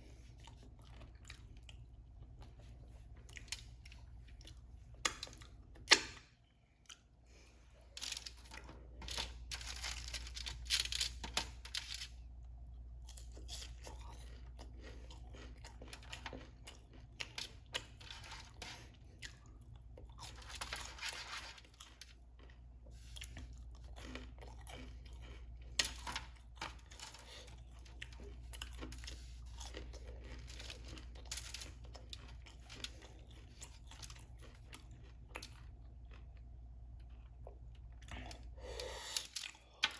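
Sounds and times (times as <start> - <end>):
crunchy bites and chewing: 8.0 - 39.8.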